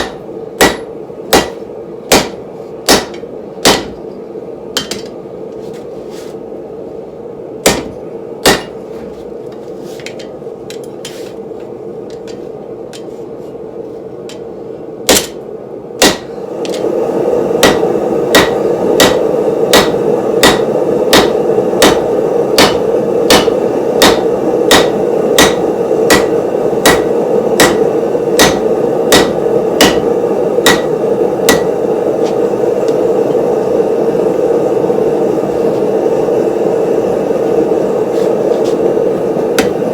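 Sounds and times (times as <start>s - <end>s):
steady rushing noise: 16.0s - 39.9s.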